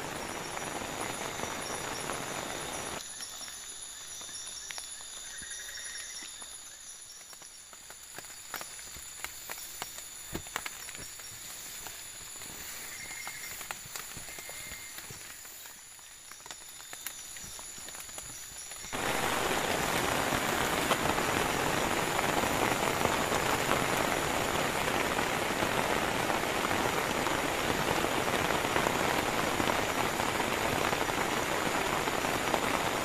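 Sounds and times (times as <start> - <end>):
heavy rain falling: 0.0 - 3.1, 7.2 - 33.0.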